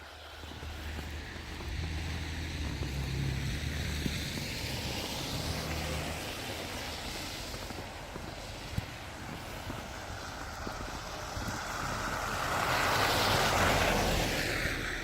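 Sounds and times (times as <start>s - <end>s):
vehicle driving past: 0.2s - 7.9s, 9.9s - 15.0s.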